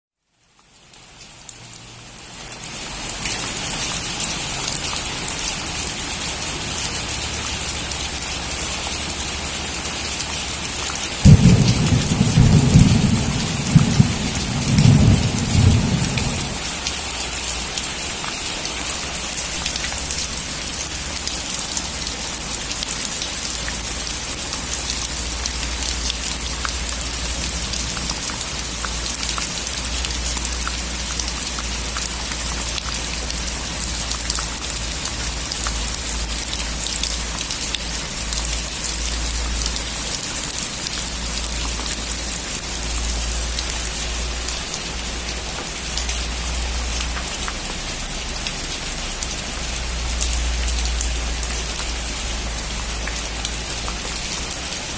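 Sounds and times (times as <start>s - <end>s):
heavy rain on a metal roof: 0.2s - 54.9s
thunderclap with low rumble: 11.2s - 16.8s.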